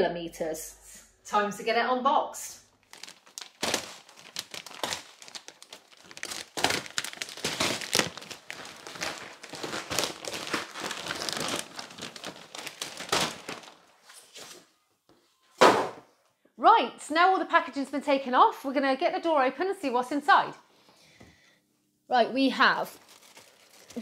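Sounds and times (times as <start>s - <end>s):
packaging crinkling and tearing: 2.8s - 14.6s, 22.9s - 24.0s.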